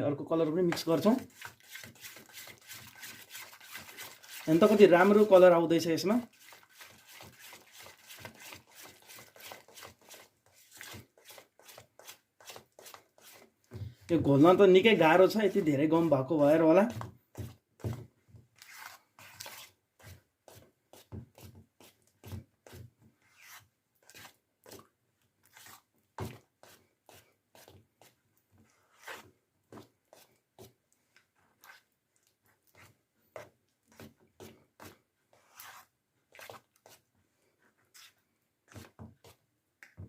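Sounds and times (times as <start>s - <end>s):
stirrer scraping a container: 0.7s - 13.8s, 14.5s - 17.5s.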